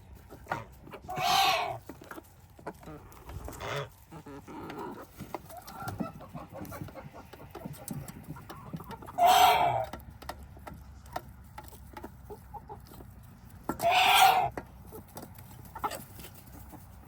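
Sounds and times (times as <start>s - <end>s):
chickens clucking: 0.0s - 17.0s
loud chicken call: 1.0s - 1.8s, 9.0s - 9.9s, 13.8s - 14.5s.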